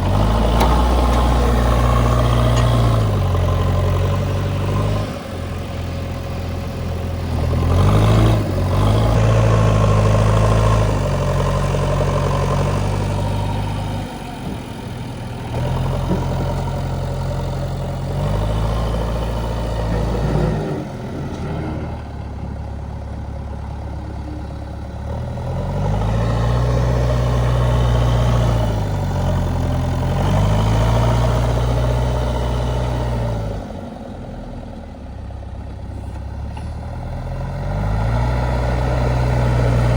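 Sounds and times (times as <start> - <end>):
diesel engine revving: 0.0 - 34.8, 35.8 - 39.9
brief clunks: 0.4 - 1.8.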